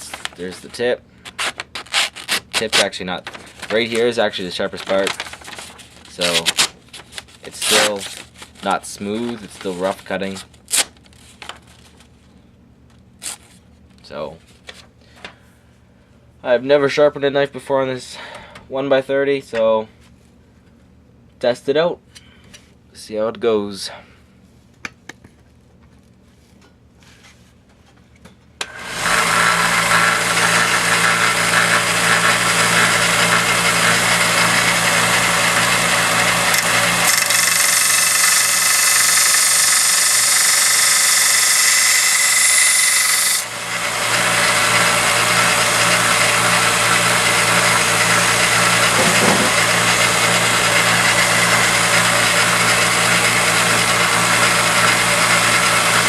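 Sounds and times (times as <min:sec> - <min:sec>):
belt grinder running: 0:07.7 - 0:07.9, 0:28.6 - 0:56.0
knife blade grinding on belt: 0:48.6 - 0:51.2.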